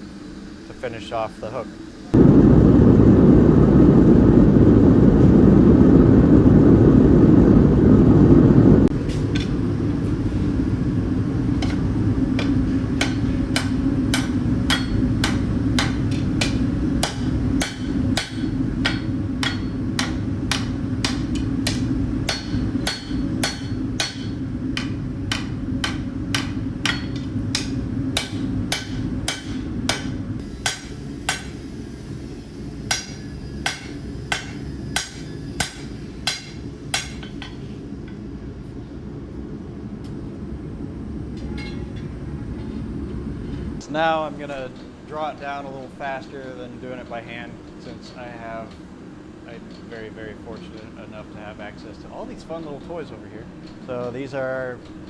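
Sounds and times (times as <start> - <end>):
forge roaring: 2.1 - 9.0
hammer ringing on anvil: 12.4 - 31.7, 32.9 - 37.6, 41.4 - 42.0.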